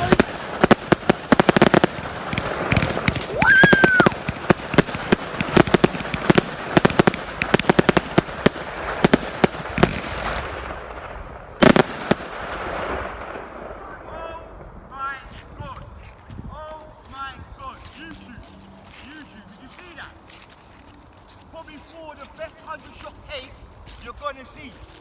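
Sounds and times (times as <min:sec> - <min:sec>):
firework sharp cracks: 0:00.0 - 0:14.8
rising firework whistle: 0:03.2 - 0:04.3.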